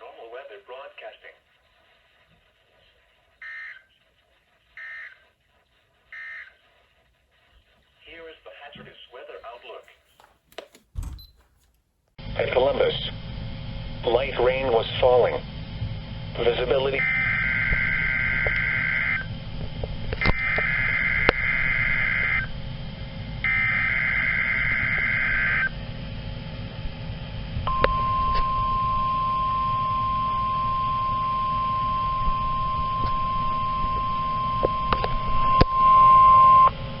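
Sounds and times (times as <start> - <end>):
steady warning alarm tone: 4.8 - 5.3, 6.1 - 6.6, 17.0 - 19.3, 23.4 - 25.7, 27.7 - 37.0
static clicks: 32.2 - 36.0.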